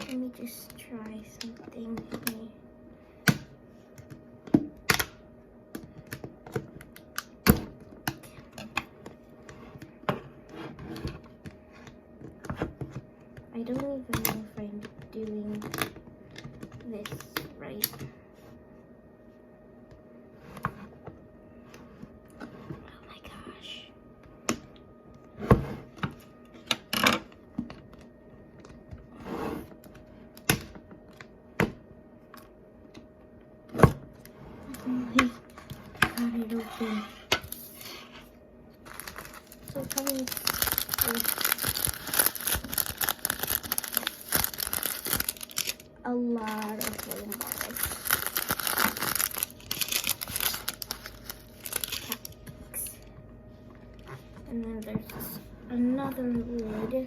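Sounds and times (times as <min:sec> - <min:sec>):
plastic packaging clicks: 0:38.9 - 0:45.9, 0:46.5 - 0:52.4.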